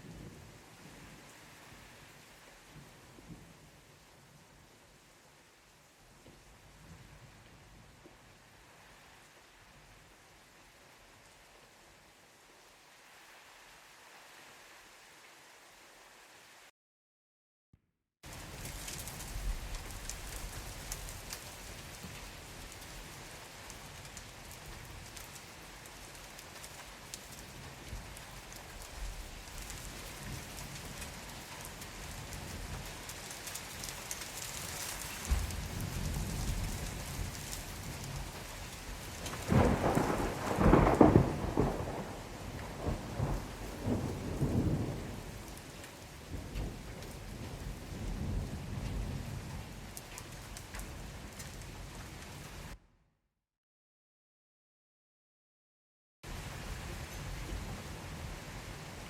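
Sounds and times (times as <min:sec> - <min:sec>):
rain falling on a surface: 0:00.0 - 0:16.7, 0:18.2 - 0:52.8, 0:56.2 - 0:59.0
thunder rumbling: 0:35.3 - 0:38.5, 0:39.2 - 0:45.5.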